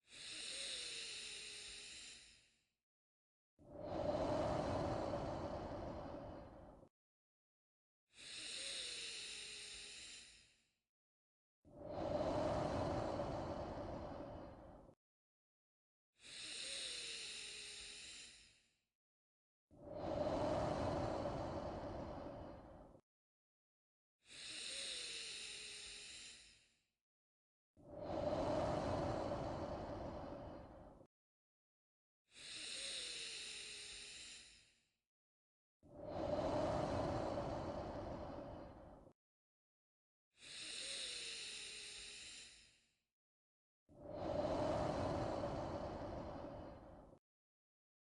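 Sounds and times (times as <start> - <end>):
person breathing: 0.0 - 2.6, 3.7 - 6.9, 8.1 - 10.6, 11.7 - 15.0, 16.2 - 18.7, 19.8 - 23.0, 24.3 - 26.7, 27.8 - 31.1, 32.3 - 34.8, 35.9 - 39.2, 40.4 - 42.9, 44.0 - 47.2.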